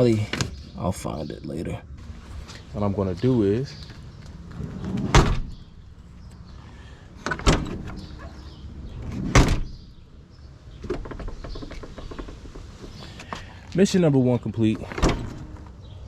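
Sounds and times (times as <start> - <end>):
truck door slamming: 4.9 - 5.7, 9.0 - 10.0.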